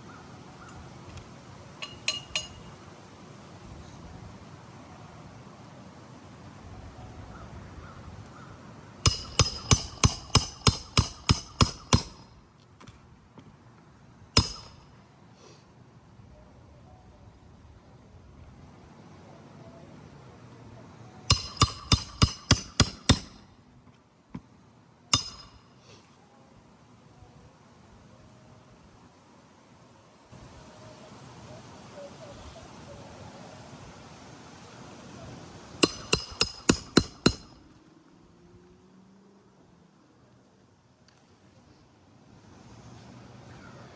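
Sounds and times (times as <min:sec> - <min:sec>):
faint steady hiss: 0:00.0 - 0:43.9
hammer striking roofing nails: 0:09.1 - 0:12.3, 0:14.4 - 0:14.8, 0:21.3 - 0:23.5, 0:35.8 - 0:37.6.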